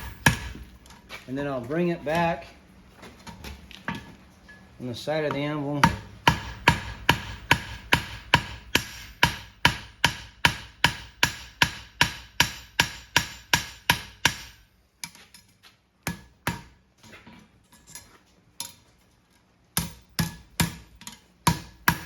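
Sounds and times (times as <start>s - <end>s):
hammer striking horseshoe on anvil: 0.0s - 0.7s, 5.2s - 15.2s, 16.1s - 16.8s, 19.8s - 22.0s.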